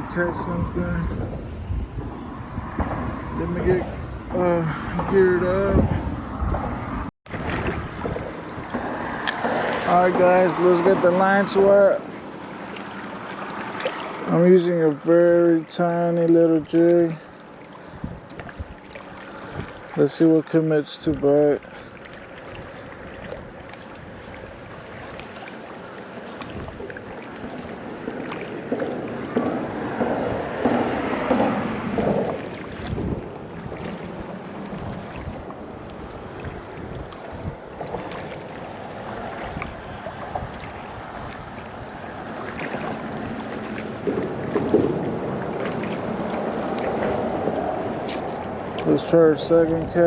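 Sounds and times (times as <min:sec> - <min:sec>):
wind on microphone: 0:00.0 - 0:10.3, 0:17.9 - 0:19.9, 0:26.4 - 0:27.7, 0:28.5 - 0:48.9
river water running: 0:00.0 - 0:50.0.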